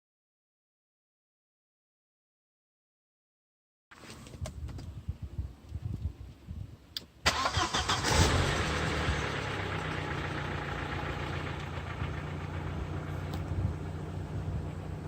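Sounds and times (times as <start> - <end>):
car engine starting and idling: 7.2 - 15.0.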